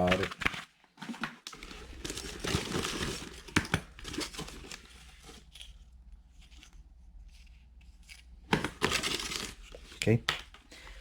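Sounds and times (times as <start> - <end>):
packaging rustling and crinkling: 0.0 - 6.7, 8.5 - 10.2.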